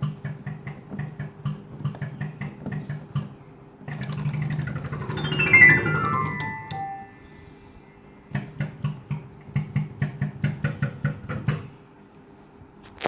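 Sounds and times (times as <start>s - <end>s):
digital piano notes: 3.9s - 9.4s.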